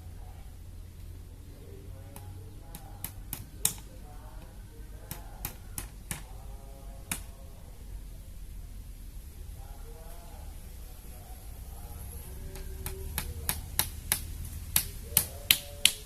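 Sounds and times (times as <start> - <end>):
low wind rumble: 0.0 - 16.0
sharp clicks or snaps: 2.1 - 3.9, 12.5 - 16.0.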